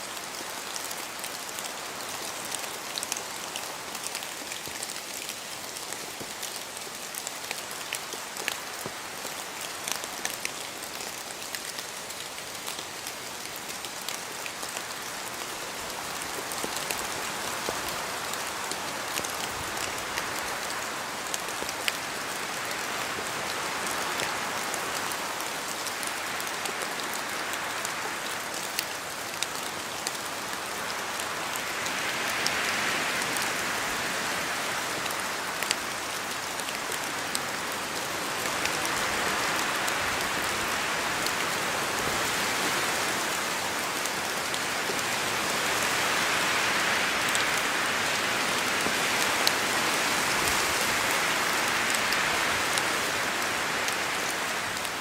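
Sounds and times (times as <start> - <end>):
rain through trees: 0.0 - 55.0
wind gusts in trees: 0.0 - 55.0
drops ticking on leaves: 0.1 - 22.0.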